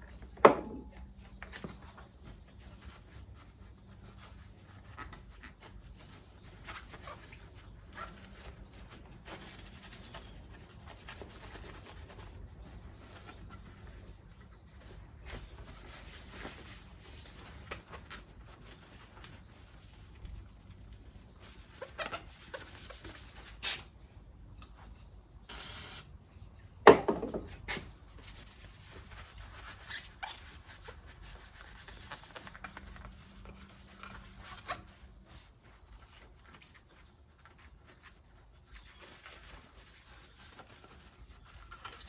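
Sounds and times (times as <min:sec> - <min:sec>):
rubbing and scraping of metal parts: 0:38.8 - 0:42.0.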